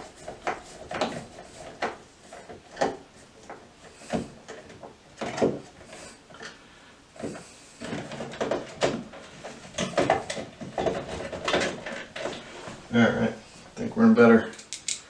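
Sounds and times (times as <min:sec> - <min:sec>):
knocks and scrapes of switch in wall box: 0:00.0 - 0:06.5.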